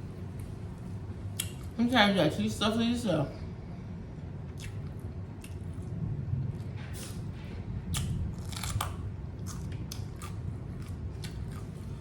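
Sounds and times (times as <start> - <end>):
crisp chewing crunches: 8.0 - 12.0.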